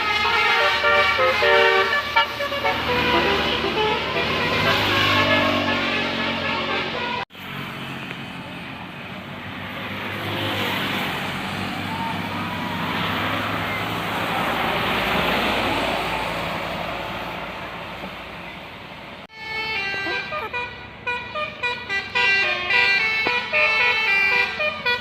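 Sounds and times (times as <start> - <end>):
musical horn call: 0.0 - 7.2, 19.3 - 25.0
vehicle passing: 0.1 - 25.0.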